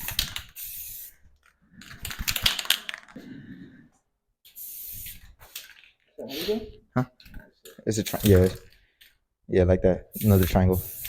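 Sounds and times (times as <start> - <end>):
spray paint can hissing: 0.0 - 1.2, 4.5 - 5.6, 8.1 - 8.6, 10.1 - 11.0
spray can clicking and rattling: 0.0 - 3.2, 4.5 - 6.0, 8.1 - 8.8, 10.1 - 11.0.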